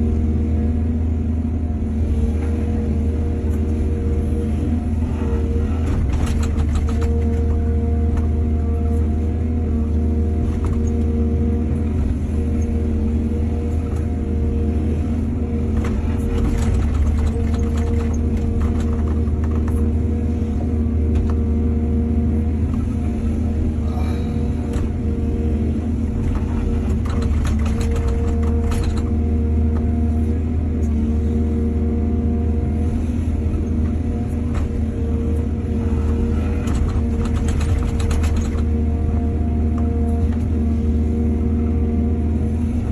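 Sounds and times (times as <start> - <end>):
diesel engine running: 0.0 - 42.9
knocks and rattles: 5.9 - 7.6, 15.8 - 19.8, 26.3 - 29.2, 36.6 - 38.8.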